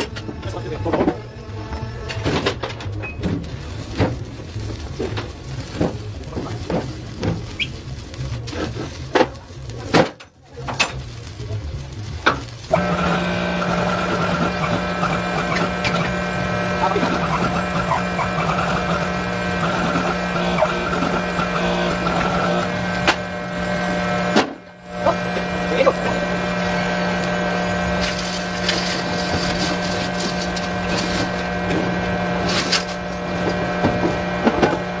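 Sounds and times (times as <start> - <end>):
crackles and sharp clicks: 2.6 - 35.0
steady machine drone: 10.8 - 35.0.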